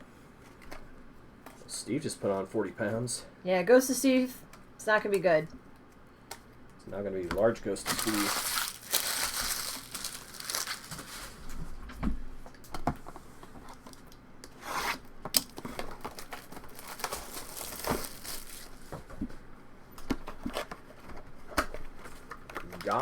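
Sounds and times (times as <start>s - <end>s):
foil wrappers crinkling and tearing: 7.7s - 11.6s, 15.4s - 19.0s, 21.7s - 23.0s.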